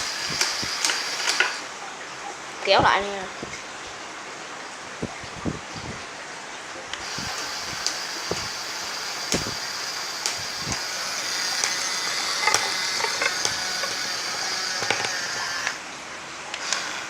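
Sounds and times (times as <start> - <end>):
electric motors whining: 0.0 - 1.7, 7.0 - 17.0
clicks and creaks: 10.2 - 15.8.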